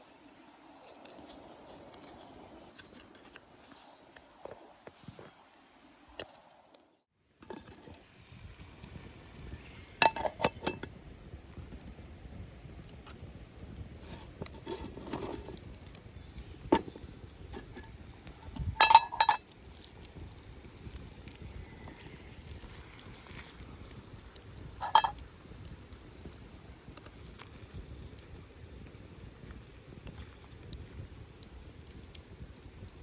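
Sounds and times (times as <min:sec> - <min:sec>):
metal cookware clinking: 0:18.8 - 0:19.4, 0:24.8 - 0:25.1.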